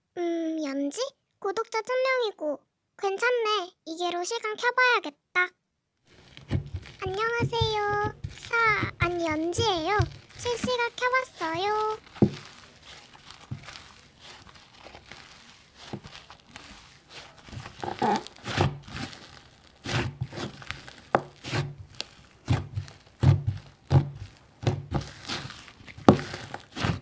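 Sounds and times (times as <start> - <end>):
slime squished by hand: 6.1 - 27.0.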